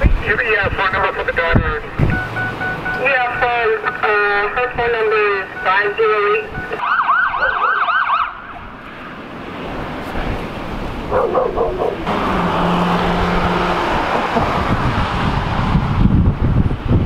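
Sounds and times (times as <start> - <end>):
vehicle road and engine noise: 0.0 - 17.0
emergency siren yelping: 2.0 - 8.7.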